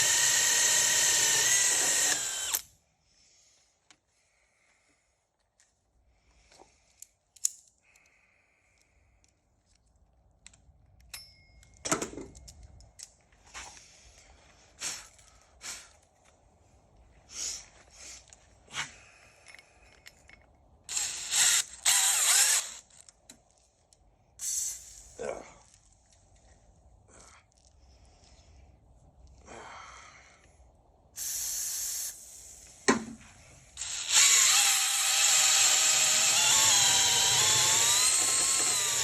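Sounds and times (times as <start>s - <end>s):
metallic tool clicks and clinks: 7.3s - 8.0s.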